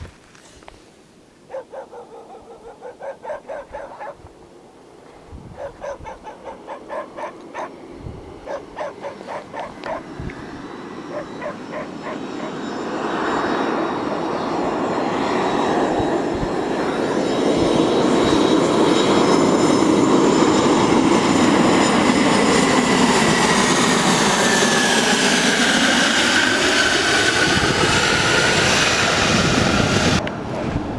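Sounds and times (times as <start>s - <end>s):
dog barking: 1.5s - 4.3s, 5.5s - 7.8s, 8.4s - 10.2s, 11.1s - 12.6s
jet engines roaring: 6.0s - 30.9s.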